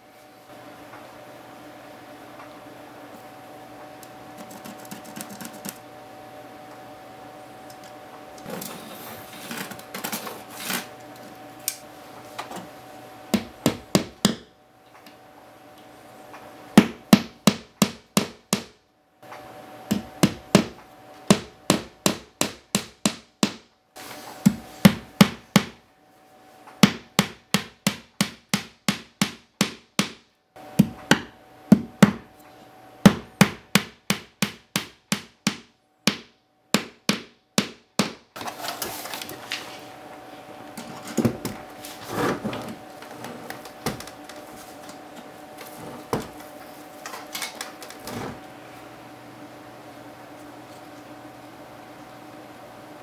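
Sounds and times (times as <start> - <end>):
hammer strikes: 26.8 - 30.2, 33.1 - 38.3.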